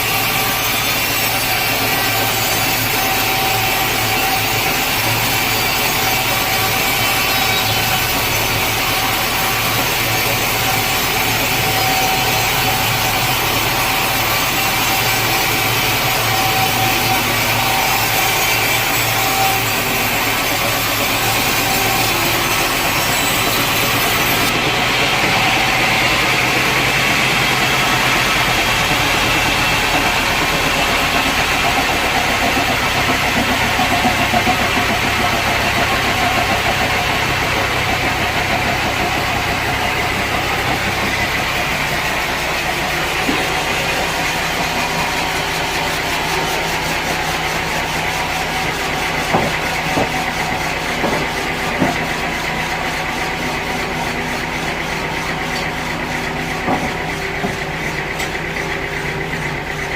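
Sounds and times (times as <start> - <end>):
sawmill machinery running: 0.0 - 59.9
sharp knocks: 49.2 - 50.3, 51.0 - 52.0, 56.6 - 57.6.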